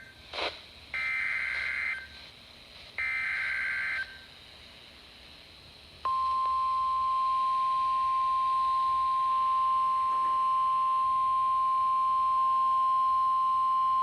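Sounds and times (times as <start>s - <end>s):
high steady alarm tone: 1.0s - 2.2s, 3.0s - 4.3s, 6.1s - 14.0s.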